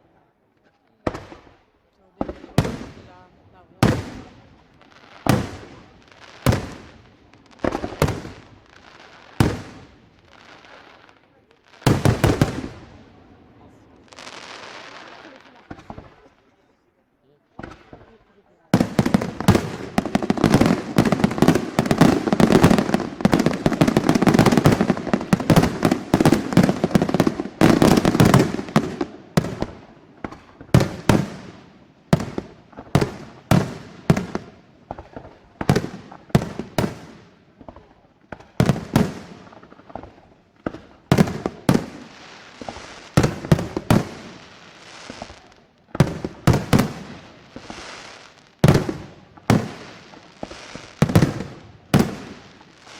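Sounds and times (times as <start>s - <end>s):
fireworks bangs and crackle: 0.9s - 16.8s, 17.4s - 52.9s.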